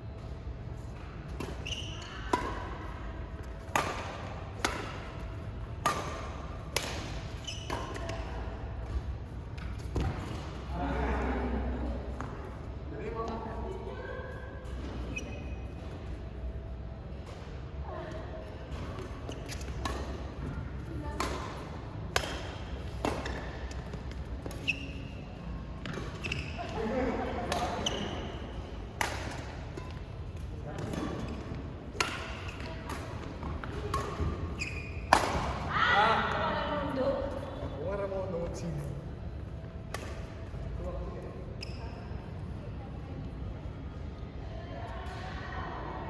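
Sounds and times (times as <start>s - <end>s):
shoe squeaks: 1.4s - 2.3s, 7.2s - 8.3s, 14.9s - 15.9s, 19.2s - 20.0s, 24.4s - 26.8s, 27.7s - 28.6s, 34.0s - 35.2s, 41.5s - 42.3s
rackets striking shuttlecock: 3.4s - 8.3s, 21.2s - 23.5s, 28.8s - 34.4s, 35.0s - 35.6s.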